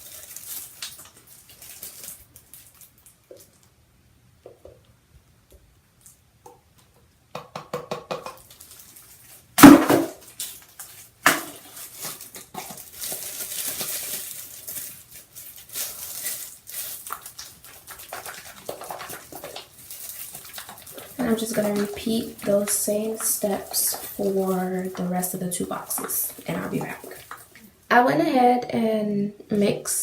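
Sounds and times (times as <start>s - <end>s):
taps on plastic bottles: 7.3s - 8.4s
bottle rattling and sloshing: 16.0s - 27.7s.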